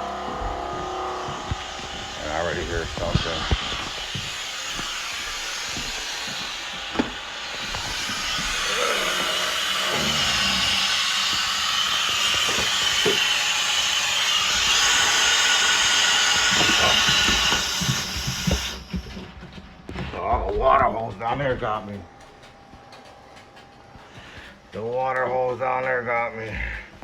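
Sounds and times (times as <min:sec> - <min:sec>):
compressed air hissing from leak: 0:01.7 - 0:19.2.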